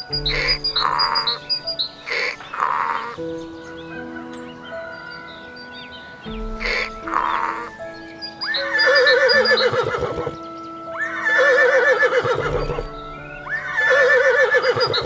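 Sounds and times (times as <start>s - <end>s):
background music: 0.0s - 15.0s
horse whinnying: 8.4s - 10.4s, 11.0s - 15.0s.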